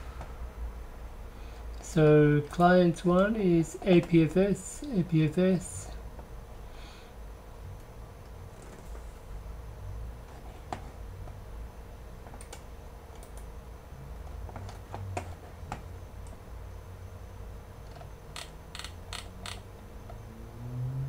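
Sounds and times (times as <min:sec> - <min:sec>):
steady low hum: 0:00.0 - 0:21.0
computer mouse clicks: 0:12.4 - 0:13.5.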